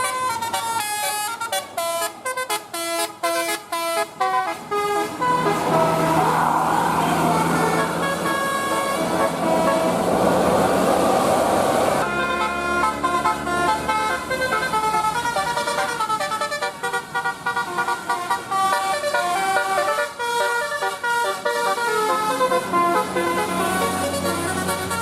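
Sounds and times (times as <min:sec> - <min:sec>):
multi-tone bus horn tune: 0:00.0 - 0:25.0
loud rushing noise: 0:05.3 - 0:12.0.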